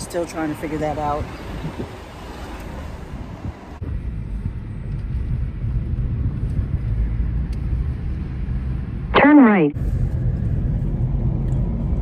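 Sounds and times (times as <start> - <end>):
car road noise: 0.0 - 12.0.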